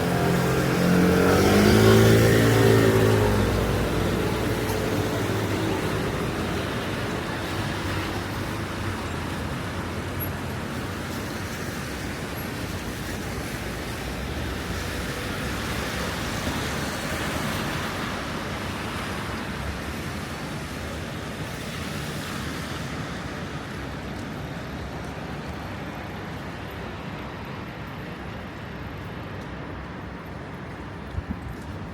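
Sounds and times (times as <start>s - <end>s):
passing vehicle engine: 0.0s - 7.6s
falling rain: 0.0s - 31.9s
traffic on wet road: 0.0s - 31.9s.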